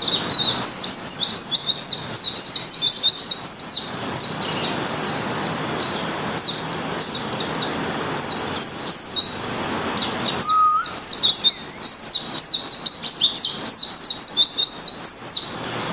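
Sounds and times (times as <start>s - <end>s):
bird singing fast high song: 0.0s - 15.9s
brief lower whistle: 10.4s - 11.0s.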